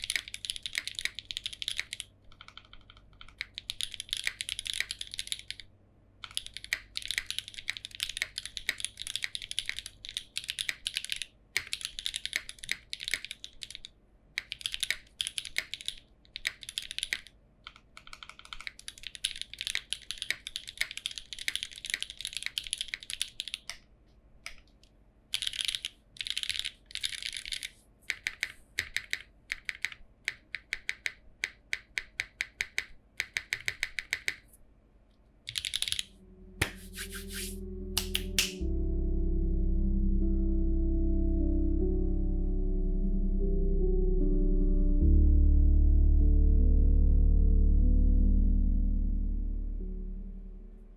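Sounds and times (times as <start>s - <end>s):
mechanical keyboard typing: 0.0s - 23.8s, 25.4s - 34.5s, 35.5s - 38.6s.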